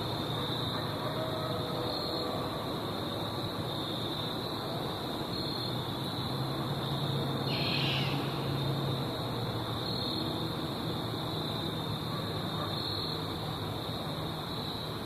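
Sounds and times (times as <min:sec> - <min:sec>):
night insects buzzing: 0:00.0 - 0:15.0.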